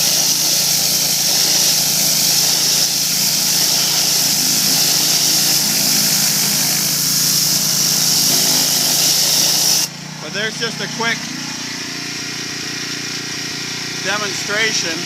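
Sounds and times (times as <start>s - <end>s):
water spraying against siding: 0.0s - 10.0s
pressure washer engine running: 0.0s - 15.0s.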